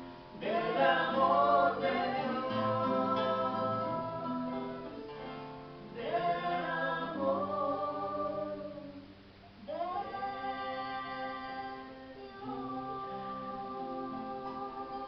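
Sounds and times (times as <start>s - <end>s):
plucked guitar: 0.0s - 15.0s
voices singing together: 0.0s - 15.0s.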